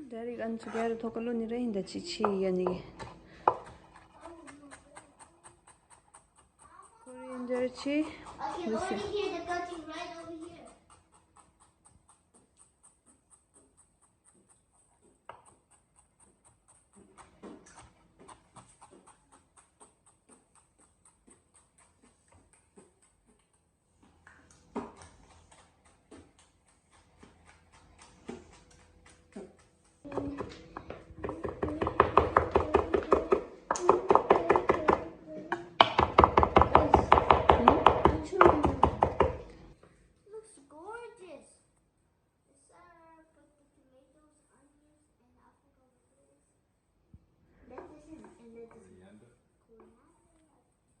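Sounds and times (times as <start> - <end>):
knife chopping on cutting board: 2.2 - 6.6, 24.7 - 39.5.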